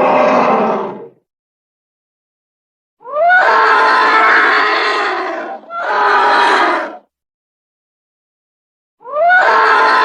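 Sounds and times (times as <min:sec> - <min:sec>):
creature call: 0:09.0 - 0:10.0.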